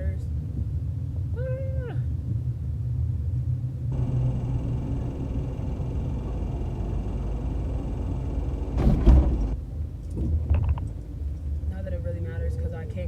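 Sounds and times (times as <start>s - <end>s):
car engine and road noise: 3.9s - 12.0s.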